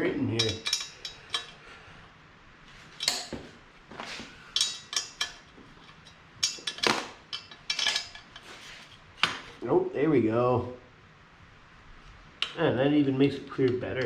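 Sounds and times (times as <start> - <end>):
metallic clinks and knocks: 0.4 - 1.6, 2.9 - 3.5, 4.5 - 8.6.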